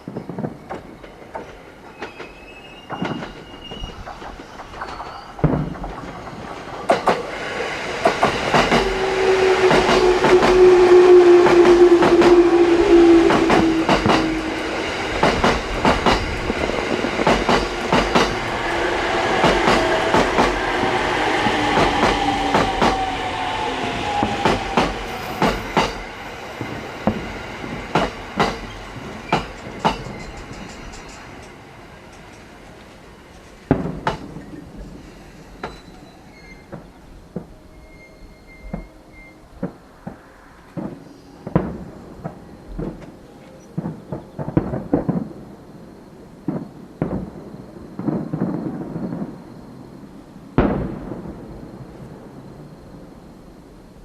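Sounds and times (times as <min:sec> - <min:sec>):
wheels clacking over rail joints: 0:00.1 - 0:23.1, 0:24.0 - 0:37.5
electric train passing: 0:00.5 - 0:54.0
fireworks bangs: 0:04.7 - 0:07.3, 0:26.6 - 0:30.1, 0:40.8 - 0:43.0, 0:43.8 - 0:45.4, 0:50.6 - 0:52.0.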